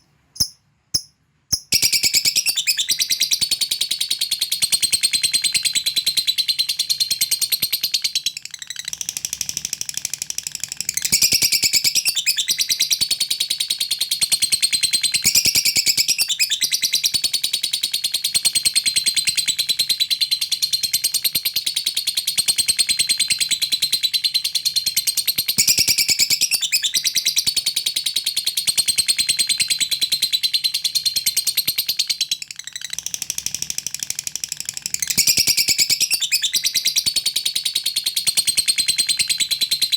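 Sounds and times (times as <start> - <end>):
lovebird high-pitched chatter: 0.4 - 17.7, 28.5 - 39.9.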